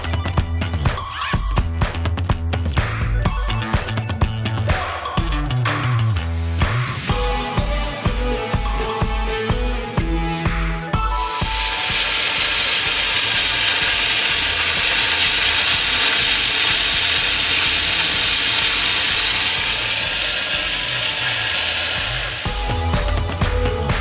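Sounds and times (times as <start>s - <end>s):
low music beat: 0.0s - 20.8s, 22.0s - 24.0s
radiator cooling fan rushing: 11.4s - 24.0s.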